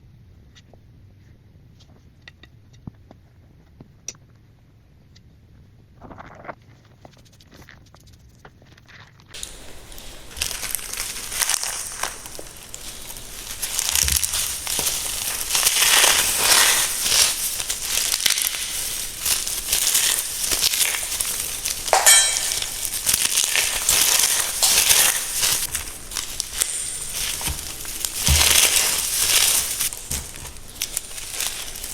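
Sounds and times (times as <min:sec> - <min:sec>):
cornstarch crunching: 0:09.4 - 0:31.9.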